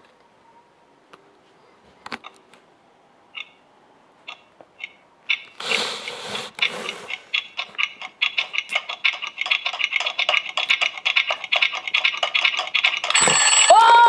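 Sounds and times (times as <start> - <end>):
plastic toys clicking: 4.3 - 14.0.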